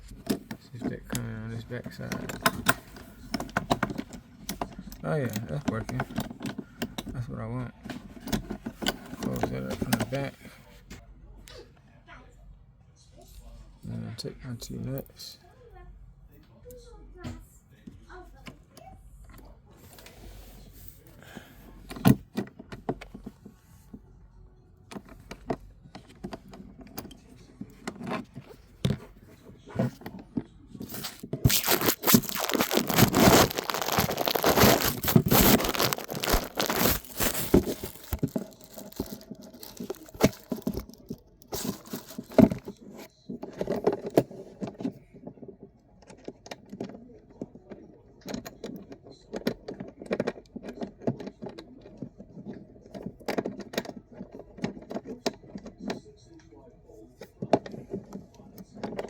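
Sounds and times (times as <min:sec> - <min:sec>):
scraping and rustling: 0:27.7 - 0:44.7.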